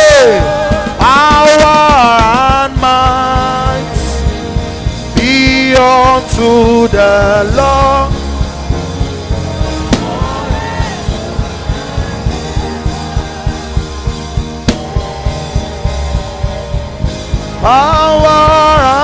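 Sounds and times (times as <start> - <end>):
drum kit beat: 0.0 - 19.0
keyboard chords: 0.0 - 19.0
person singing: 9.6 - 19.0.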